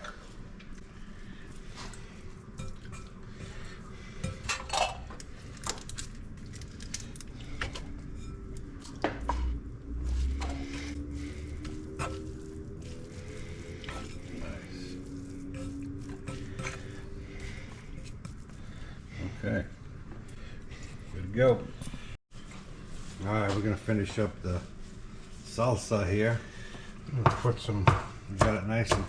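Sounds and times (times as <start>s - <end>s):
dishes and utensils clinking: 4.2s - 5.2s.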